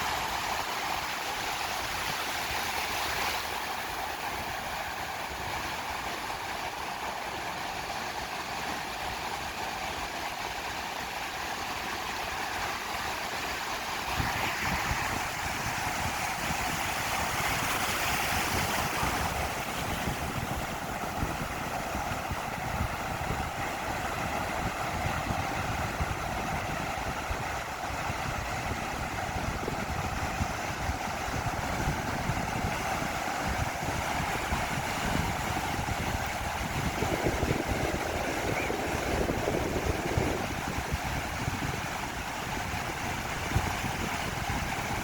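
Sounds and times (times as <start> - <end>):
ocean surf on a beach: 0.0 - 45.0
wind on microphone: 13.9 - 45.0.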